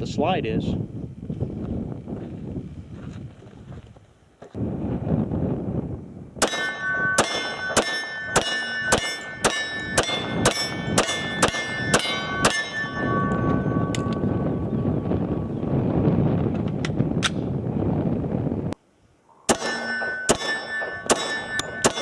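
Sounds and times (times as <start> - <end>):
pistol shots: 6.4 - 12.7, 19.5 - 22.0
bullets clanging on steel targets: 6.4 - 14.3, 19.5 - 22.0.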